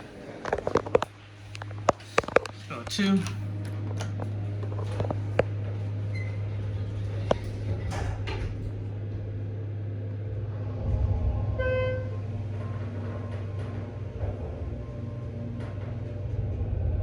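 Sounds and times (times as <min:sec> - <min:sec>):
elevator clicks: 0:00.0 - 0:10.3
elevator humming: 0:00.0 - 0:17.0.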